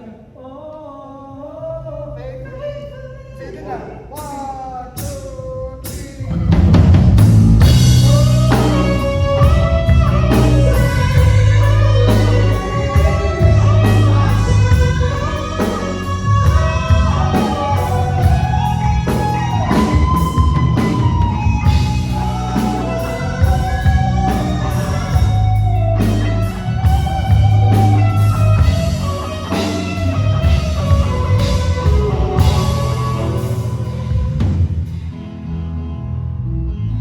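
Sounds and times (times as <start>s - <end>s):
live rock band playing: 4.2s - 36.8s
gliding lead melody: 7.6s - 37.0s.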